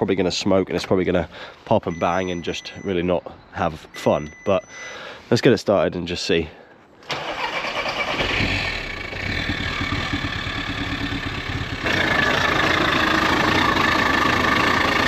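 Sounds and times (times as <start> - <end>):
car engine running roughly: 8.4 - 15.0.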